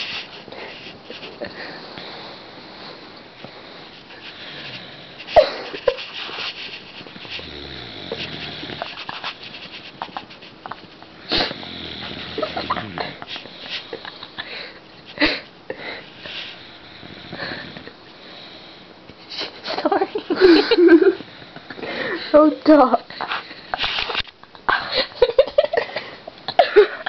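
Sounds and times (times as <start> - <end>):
woman snoring: 7.3 - 9.0, 11.2 - 13.3, 16.6 - 18.0.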